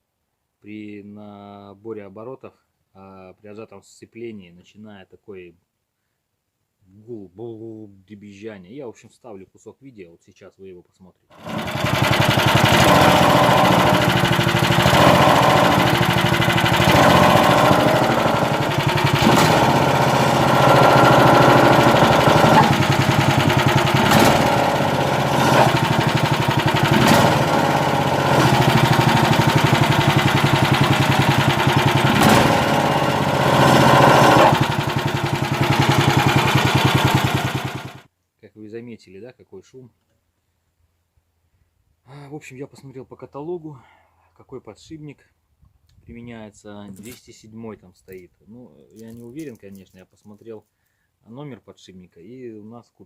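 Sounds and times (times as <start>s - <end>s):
petrol engine revving: 11.4s - 38.0s.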